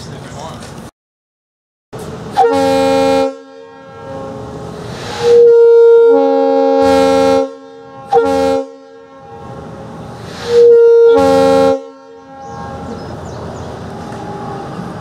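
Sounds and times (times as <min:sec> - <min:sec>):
train air horn chord: 0:02.3 - 0:13.1
air hissing: 0:04.6 - 0:06.2, 0:10.1 - 0:10.8.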